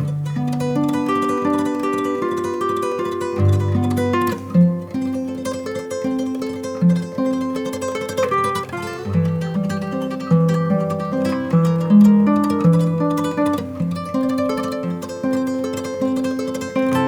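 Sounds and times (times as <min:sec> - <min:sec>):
plucked acoustic guitar melody: 0:00.0 - 0:17.0.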